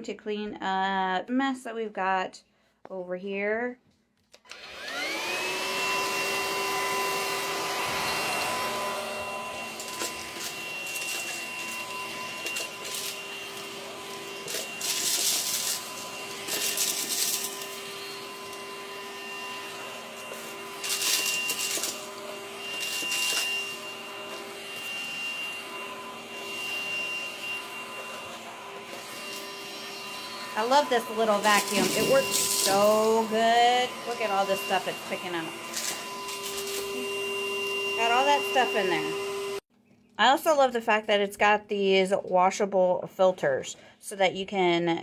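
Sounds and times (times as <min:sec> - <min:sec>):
cordless vacuum motor whining: 0:04.4 - 0:39.7.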